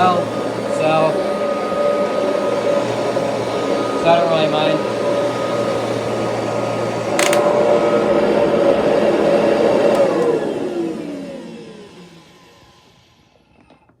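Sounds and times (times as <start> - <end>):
vacuum cleaner motor whining: 0.0 - 14.0
vacuum switch click: 7.2 - 7.5.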